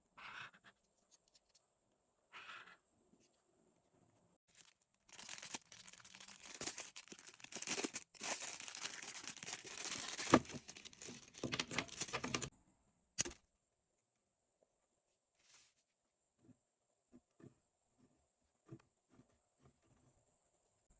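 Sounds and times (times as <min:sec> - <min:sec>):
packaging torn and crinkled: 0:04.5 - 0:12.5.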